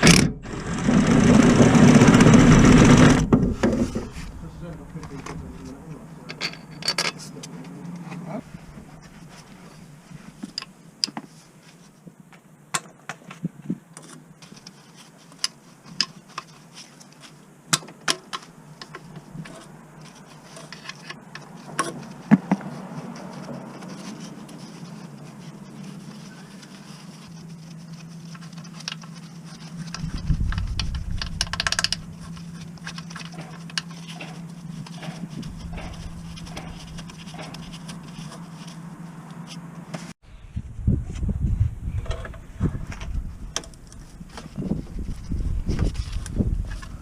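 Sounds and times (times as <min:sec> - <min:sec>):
loud low rumble: 0:00.0 - 0:06.3
steady low hum: 0:00.0 - 0:11.0, 0:24.6 - 0:47.0
sharp metallic clicks and knocks: 0:29.9 - 0:32.2, 0:32.8 - 0:38.0.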